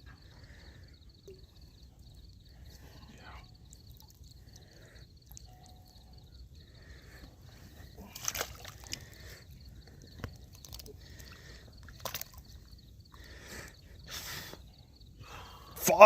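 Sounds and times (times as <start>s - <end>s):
water sloshing: 6.8s - 13.3s
sharp water splashes: 8.1s - 9.2s, 11.9s - 12.5s.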